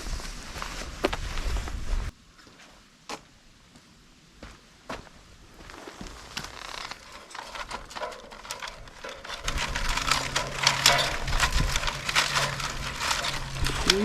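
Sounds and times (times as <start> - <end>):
dry bamboo leaves crackling: 5.6 - 14.0.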